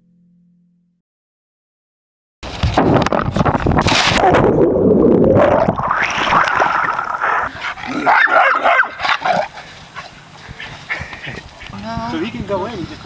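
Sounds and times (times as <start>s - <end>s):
dog yipping: 7.2s - 9.4s.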